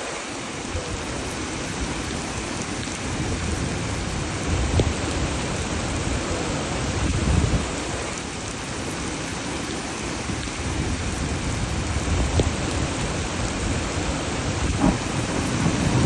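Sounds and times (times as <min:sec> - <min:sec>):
heavy rain pouring: 0:00.0 - 0:16.0.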